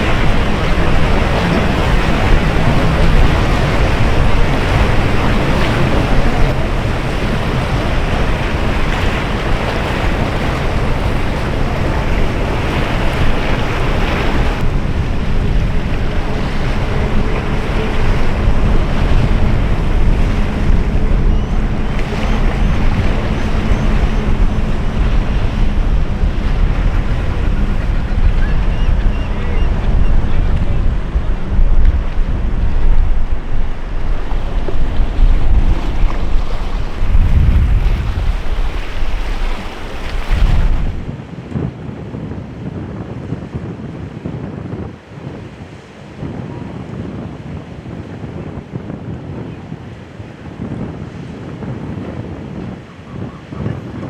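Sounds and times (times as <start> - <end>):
boat engines droning: 0.0 - 41.1
breaking surf: 0.0 - 41.3
wind buffeting microphone: 0.0 - 54.0.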